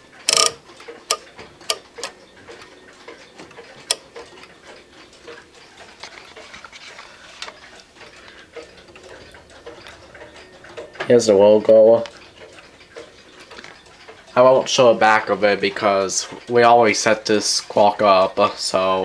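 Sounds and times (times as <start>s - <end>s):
louder clock clicks: 0.0s - 5.4s
grandfather clock ticking: 0.0s - 19.0s.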